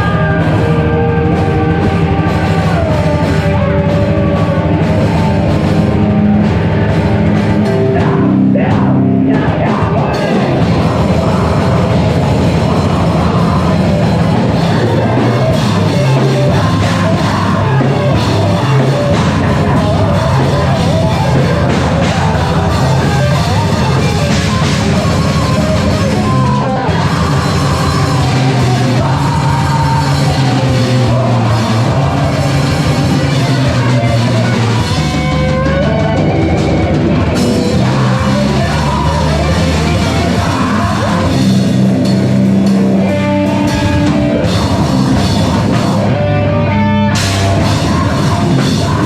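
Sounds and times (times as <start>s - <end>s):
live heavy rock band playing: 0.0s - 49.0s.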